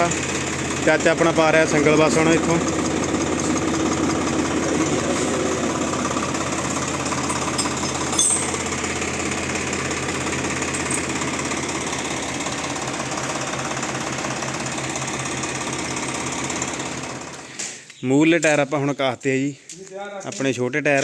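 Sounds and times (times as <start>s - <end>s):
diesel tractor engine running: 0.0s - 18.4s
sharp metallic clink: 7.1s - 9.0s, 10.6s - 11.2s.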